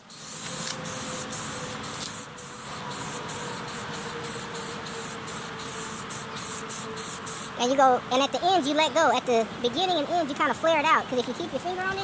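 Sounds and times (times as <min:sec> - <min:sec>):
aerosol spray can hissing: 0:00.0 - 0:07.6.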